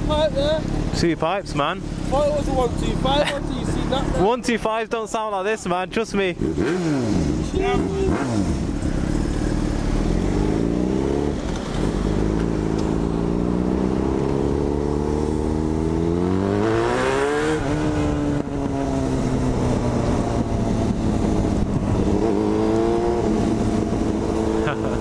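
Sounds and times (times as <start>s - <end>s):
motorcycle accelerating through gears: 6.3s - 25.0s.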